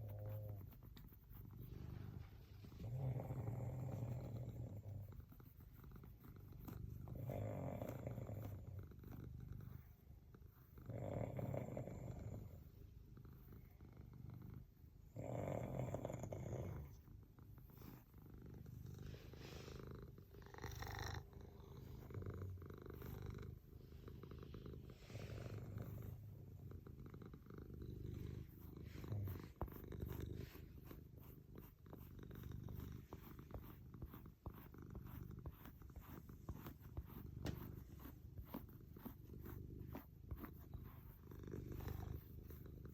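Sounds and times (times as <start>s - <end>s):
scratchy brush strokes: 0.0s - 10.8s, 27.3s - 42.9s
cat purring: 0.0s - 42.9s.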